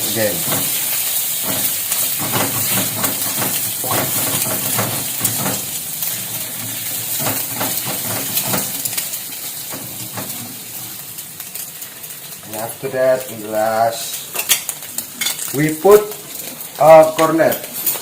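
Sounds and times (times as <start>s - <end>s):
egg sizzling in pan: 0.0s - 18.0s
spatula scraping pan: 0.4s - 10.9s.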